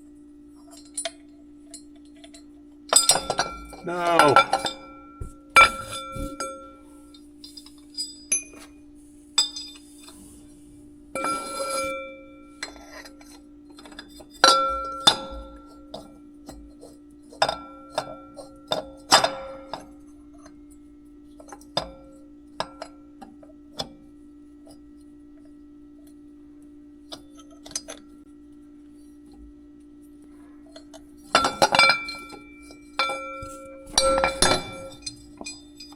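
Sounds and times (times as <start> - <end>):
low hum: 0.0 - 35.9
wrenches clinking on metal: 1.8 - 5.0, 9.4 - 9.9, 30.7 - 35.9.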